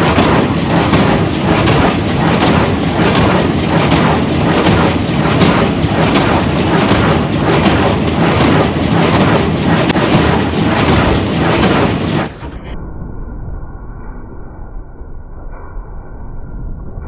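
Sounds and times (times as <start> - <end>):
hay baler mechanical pulse: 0.0 - 12.4
tractor engine: 0.0 - 12.4.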